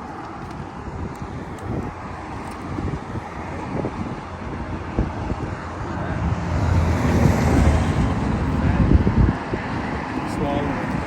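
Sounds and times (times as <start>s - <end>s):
wind on microphone: 0.0s - 11.0s
vehicle passing by: 4.8s - 11.0s.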